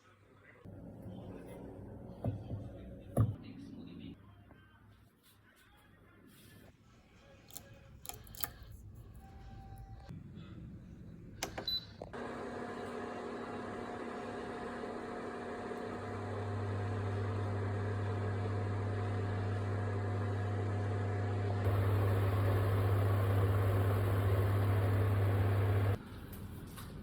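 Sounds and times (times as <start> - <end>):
electrical appliance humming: 0.7 - 4.2, 11.3 - 26.0.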